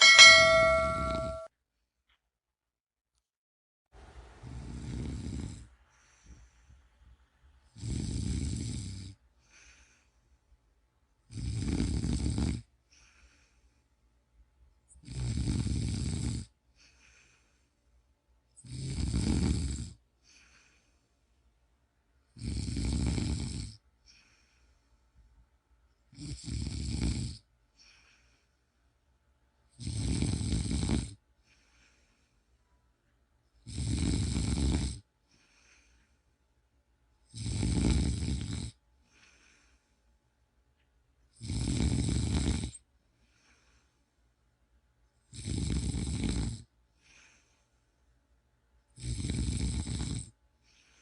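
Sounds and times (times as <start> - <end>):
person snoring: 4.4 - 5.7, 7.7 - 9.2, 11.3 - 12.7, 15.0 - 16.5, 18.6 - 20.0, 22.4 - 23.8, 26.2 - 27.4, 29.8 - 31.2, 33.6 - 35.0, 37.3 - 38.8, 41.4 - 42.8, 45.3 - 46.7, 49.0 - 50.4
faint breath: 5.6 - 7.4, 9.3 - 10.6, 12.8 - 14.1, 16.7 - 18.1, 20.2 - 21.6, 24.0 - 25.3, 27.7 - 28.9, 31.4 - 32.8, 35.2 - 36.5, 39.0 - 40.3, 43.0 - 44.4, 46.9 - 48.2, 50.6 - 51.0.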